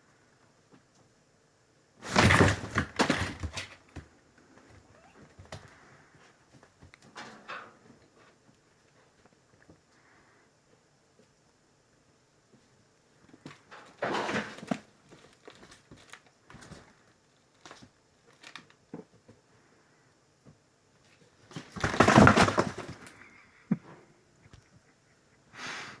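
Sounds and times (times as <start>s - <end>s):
kitten rustling and scuffling: 2.0s - 7.1s, 13.3s - 18.7s, 21.0s - 23.2s.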